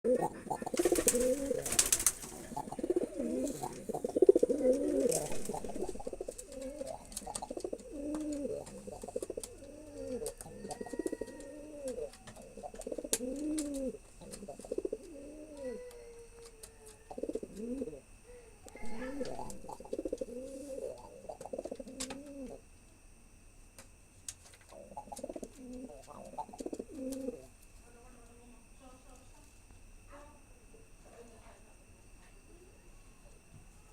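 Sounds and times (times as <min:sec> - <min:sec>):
pigeon cooing: 0:00.0 - 0:22.6, 0:24.7 - 0:27.5.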